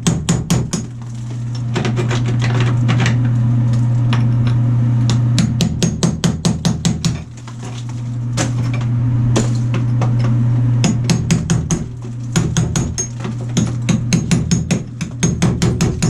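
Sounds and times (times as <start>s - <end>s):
hammer chipping ceramic tile: 0.0s - 1.0s, 5.4s - 7.3s, 10.9s - 16.0s
steady low hum: 0.0s - 16.0s.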